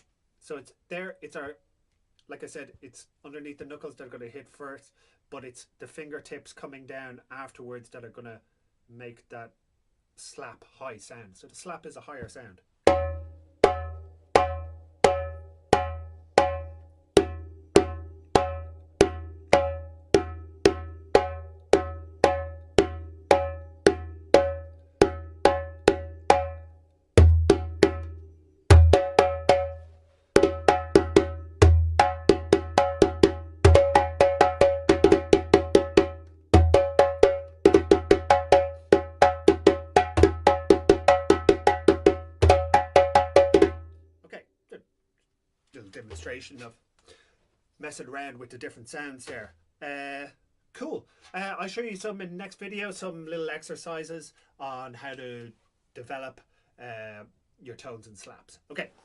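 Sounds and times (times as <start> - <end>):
djembe played by hand: 12.9 - 26.6, 27.2 - 29.8, 30.4 - 43.8.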